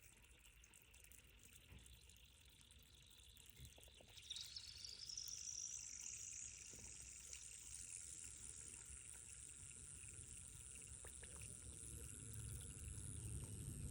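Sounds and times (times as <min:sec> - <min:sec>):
water filling a container: 0:06.5 - 0:13.9.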